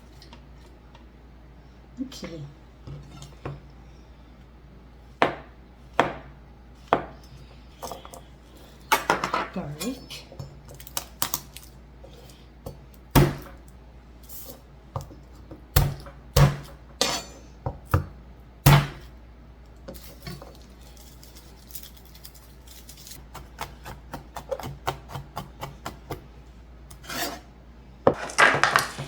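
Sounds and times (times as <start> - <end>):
knife and dishes clinking: 17.0 - 17.6.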